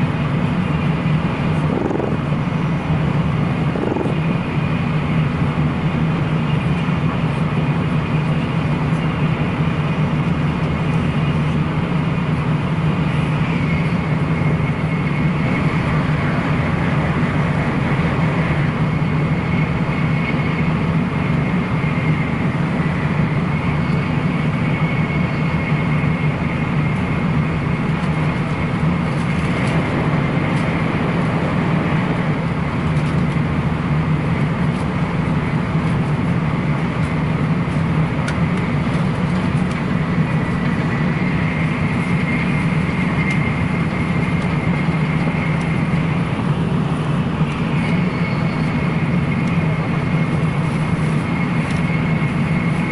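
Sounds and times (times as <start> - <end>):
train running rumble: 0.0 - 52.9
faint high whine: 37.7 - 52.9.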